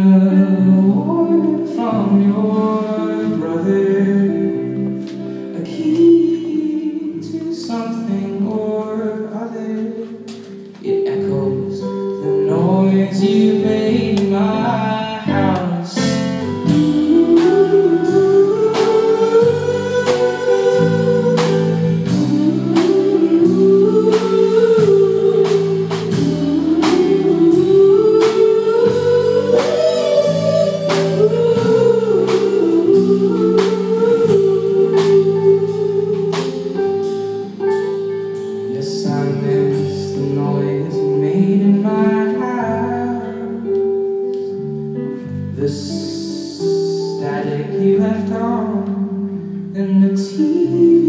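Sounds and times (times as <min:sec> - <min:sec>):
guitar chords: 0:09.8 - 0:46.2.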